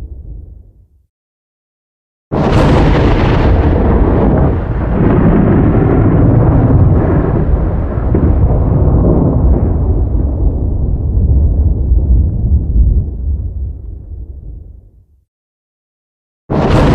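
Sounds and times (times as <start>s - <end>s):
thunderclap crack and rumble: 2.3s - 15.2s, 16.5s - 16.9s.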